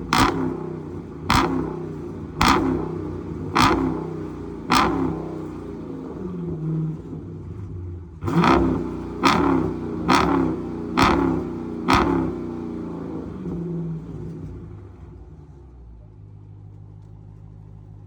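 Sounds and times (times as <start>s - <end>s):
loud car engine revving: 0.0s - 14.9s.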